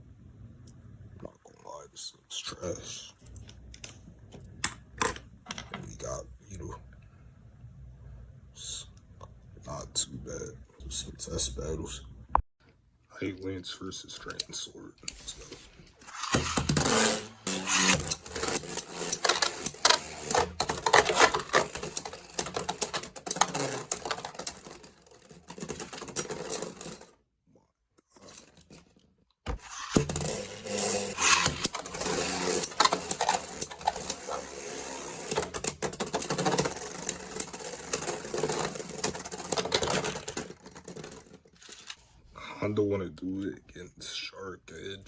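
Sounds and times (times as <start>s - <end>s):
spinning tops clattering: 16.0s - 27.1s, 29.6s - 42.0s.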